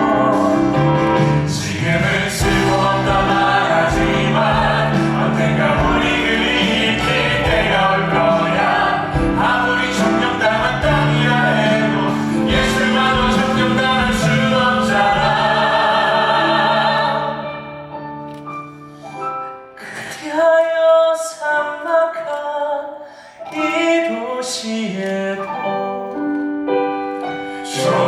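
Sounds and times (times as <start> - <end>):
cast singing together: 0.0 - 17.9, 27.2 - 28.0
band accompaniment: 0.0 - 18.4.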